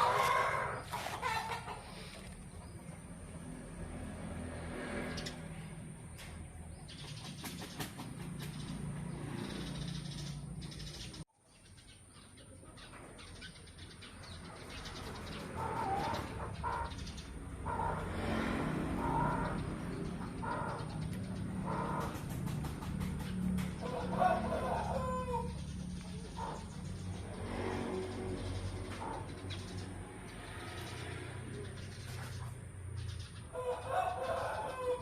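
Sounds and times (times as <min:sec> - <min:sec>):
chicken calling: 0:00.0 - 0:02.4
birds chirping: 0:05.0 - 0:35.0.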